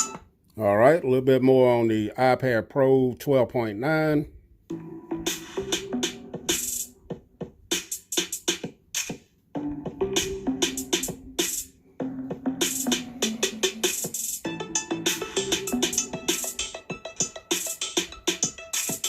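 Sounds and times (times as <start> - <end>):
electronic music through speakers: 0.0 - 0.3, 4.7 - 19.0.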